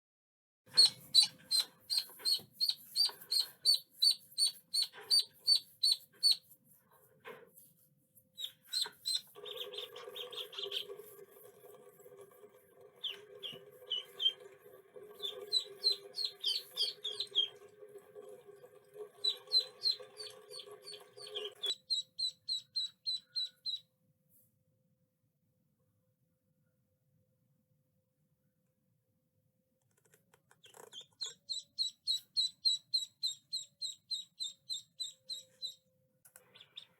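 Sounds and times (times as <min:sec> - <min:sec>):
ducklings peeping: 0:00.7 - 0:06.5, 0:08.4 - 0:11.1, 0:13.0 - 0:14.5, 0:15.2 - 0:17.6, 0:19.1 - 0:23.8, 0:30.6 - 0:35.8, 0:36.4 - 0:36.9.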